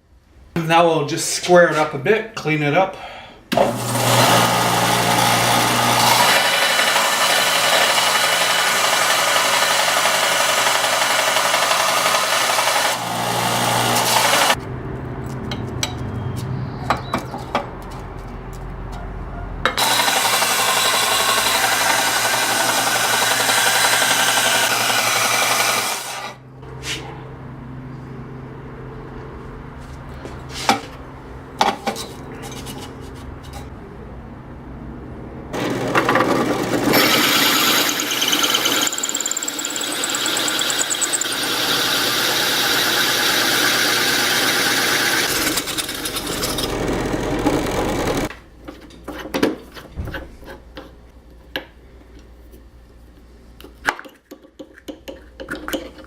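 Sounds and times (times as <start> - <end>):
power tool grinding pipe: 3.5 - 14.6, 19.8 - 26.4, 35.6 - 48.3.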